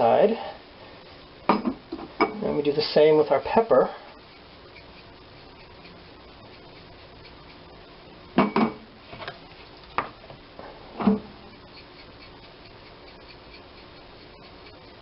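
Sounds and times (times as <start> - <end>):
kitchen things knocking and clattering: 1.5 - 2.4, 8.4 - 8.8.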